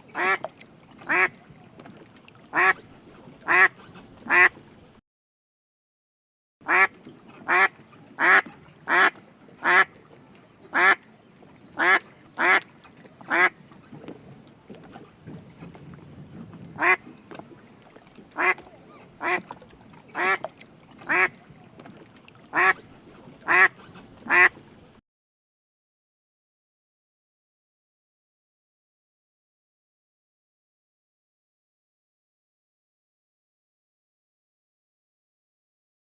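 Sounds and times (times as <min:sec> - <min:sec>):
duck quacking: 0:00.1 - 0:01.4, 0:02.5 - 0:02.8, 0:03.4 - 0:04.6, 0:06.7 - 0:09.9, 0:10.7 - 0:11.0, 0:11.8 - 0:12.6, 0:13.3 - 0:13.6, 0:16.8 - 0:17.0, 0:18.4 - 0:19.4, 0:20.2 - 0:21.4, 0:22.5 - 0:22.8, 0:23.4 - 0:24.6.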